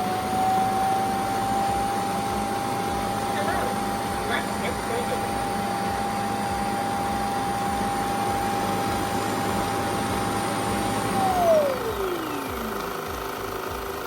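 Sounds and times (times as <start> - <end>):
suction motor whining: 0.0 - 14.0.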